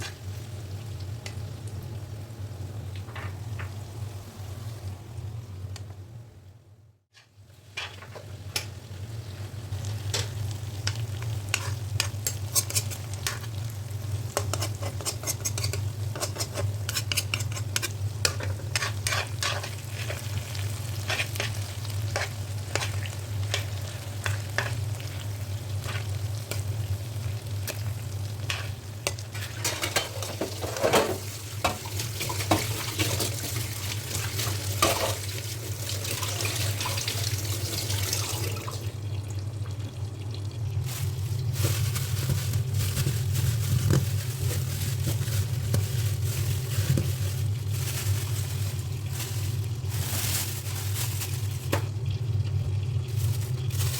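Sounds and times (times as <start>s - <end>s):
vegetables sizzling in oil: 7.2s - 53.9s
spatula scraping a pan: 11.5s - 13.6s, 14.3s - 25.2s, 28.4s - 31.8s.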